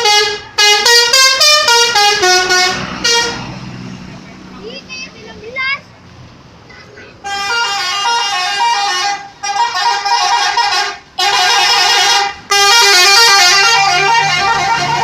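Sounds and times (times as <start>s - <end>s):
bus musical horn playing notes: 0.0s - 3.5s, 7.2s - 15.0s.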